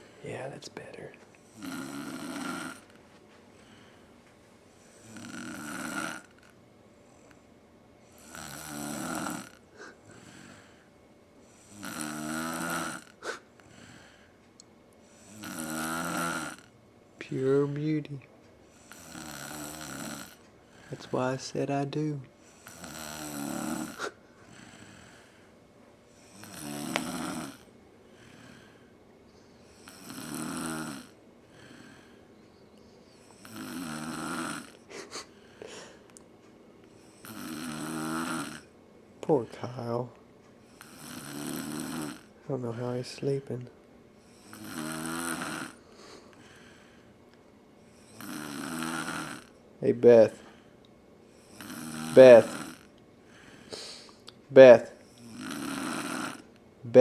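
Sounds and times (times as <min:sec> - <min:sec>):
quiet breath: 0:00.0 - 0:01.6, 0:03.3 - 0:05.1, 0:09.7 - 0:11.8, 0:13.2 - 0:15.4, 0:20.6 - 0:21.2, 0:24.0 - 0:26.4, 0:28.0 - 0:29.9, 0:31.4 - 0:33.3, 0:35.2 - 0:36.1, 0:45.8 - 0:47.2, 0:50.4 - 0:51.6, 0:53.2 - 0:54.3
woman snoring loudly: 0:01.5 - 0:02.9, 0:04.9 - 0:06.5, 0:08.1 - 0:09.6, 0:11.6 - 0:13.9, 0:15.2 - 0:16.7, 0:18.8 - 0:20.4, 0:22.5 - 0:25.2, 0:26.2 - 0:27.7, 0:29.7 - 0:32.0, 0:33.4 - 0:34.8, 0:37.1 - 0:38.7, 0:40.8 - 0:42.3, 0:44.3 - 0:45.8, 0:48.0 - 0:49.5, 0:51.4 - 0:52.9, 0:55.2 - 0:56.5.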